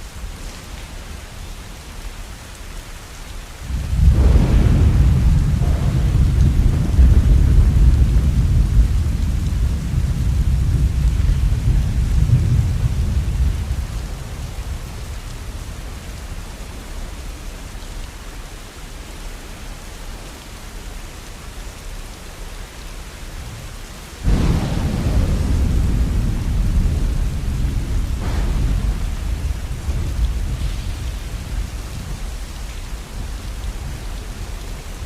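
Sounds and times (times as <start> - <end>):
steady rain: 0.0 - 35.0
thunder rumbling: 3.6 - 17.0, 24.2 - 35.0.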